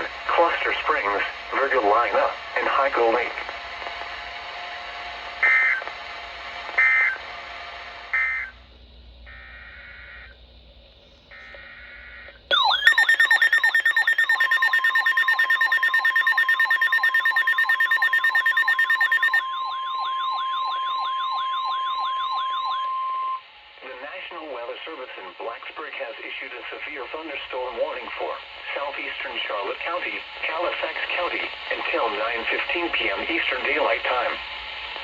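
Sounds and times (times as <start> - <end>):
steady warning tone: 9.2 - 10.4, 11.3 - 23.5
screeching data tones: 11.3 - 23.4
warbling electronic siren sweeps: 12.5 - 22.7.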